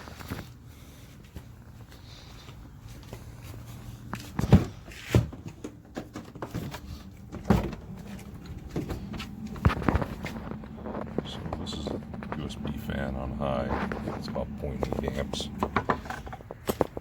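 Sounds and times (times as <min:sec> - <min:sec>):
low steady hum: 0:00.0 - 0:17.0
plastic clunks and knocks: 0:04.4 - 0:09.1, 0:15.6 - 0:17.0.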